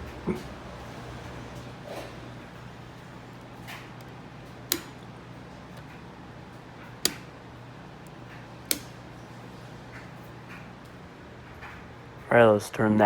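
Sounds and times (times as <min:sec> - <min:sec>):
low room hum: 0:00.0 - 0:13.0
light switch clicking: 0:04.0 - 0:05.1, 0:07.0 - 0:07.3, 0:08.0 - 0:09.0.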